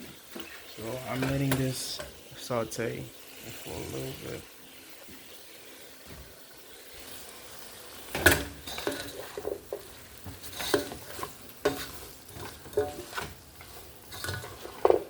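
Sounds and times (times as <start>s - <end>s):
food sizzling in a pan: 0.0s - 15.0s
utensil scraping against pan: 8.1s - 15.0s.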